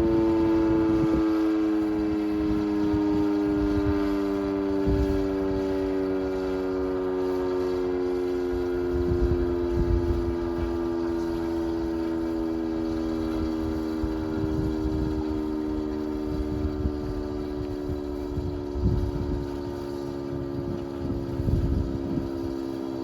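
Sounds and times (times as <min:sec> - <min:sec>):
warning siren: 0:00.0 - 0:23.0
wind buffeting microphone: 0:00.0 - 0:23.0.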